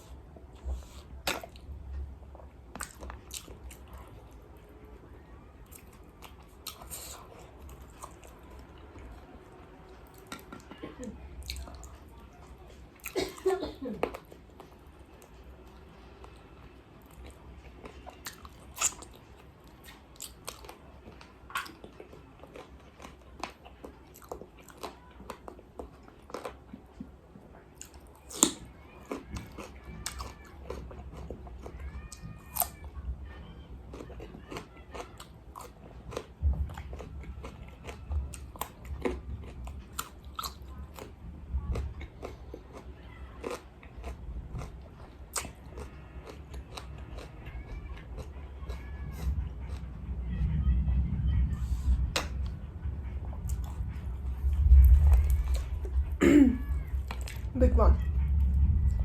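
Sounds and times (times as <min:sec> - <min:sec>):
crunching fried chicken: 0:17.1 - 0:27.1, 0:27.8 - 0:49.9.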